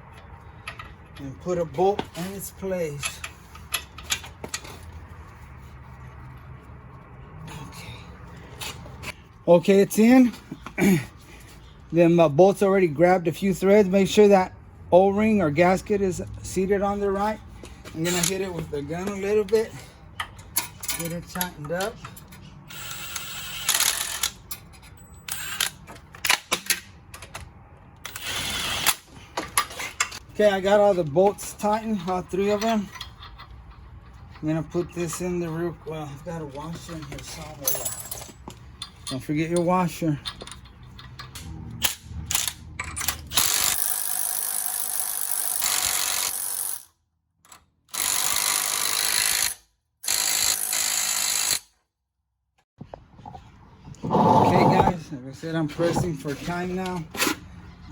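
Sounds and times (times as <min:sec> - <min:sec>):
tool handling clicks and knocks: 0:00.0 - 0:05.1, 0:17.6 - 0:22.5, 0:25.6 - 0:28.2, 0:28.9 - 0:30.3, 0:31.0 - 0:35.3, 0:36.5 - 0:43.5.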